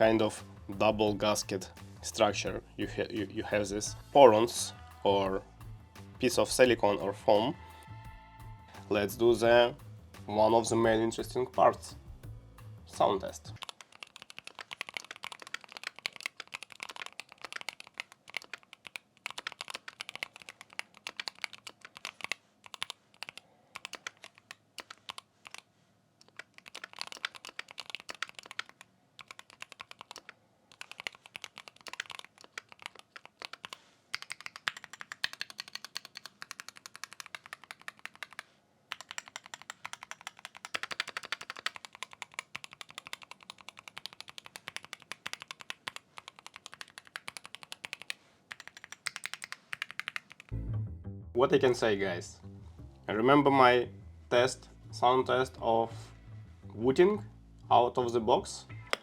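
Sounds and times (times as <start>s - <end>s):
keyboard typing clacks: 13.6s - 25.6s, 26.4s - 50.6s.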